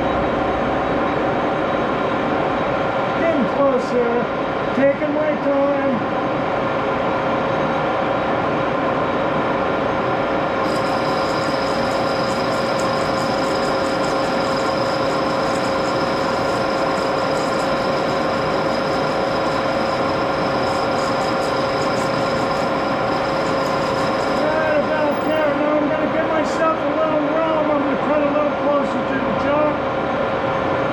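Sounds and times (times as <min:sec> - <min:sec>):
lathe gear hum: 0:09.6 - 0:25.7
high whine of tool cutting metal: 0:09.7 - 0:25.8.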